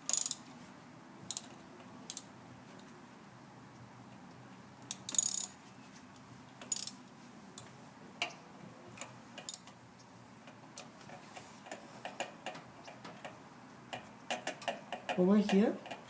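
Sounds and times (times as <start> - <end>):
socket ratchet rasping and clicking: 0.1 - 0.4, 1.3 - 1.5, 2.1 - 2.3, 4.9 - 5.5, 6.7 - 7.0.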